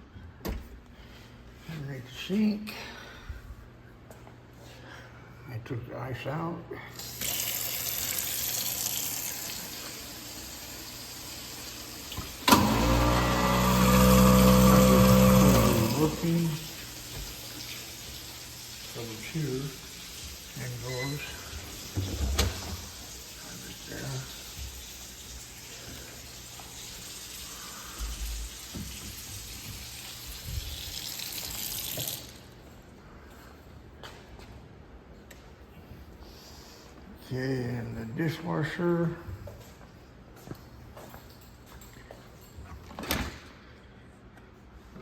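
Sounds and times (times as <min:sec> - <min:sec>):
garbage disposal motor humming: 0:07.0 - 0:32.5
water running into sink: 0:07.0 - 0:32.6.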